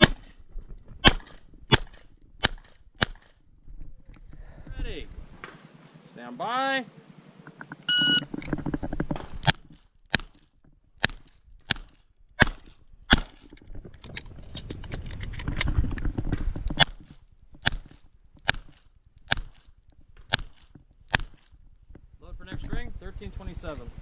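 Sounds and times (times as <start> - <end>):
revolver gunshots: 0.0 - 0.3, 1.0 - 3.4, 11.0 - 13.4.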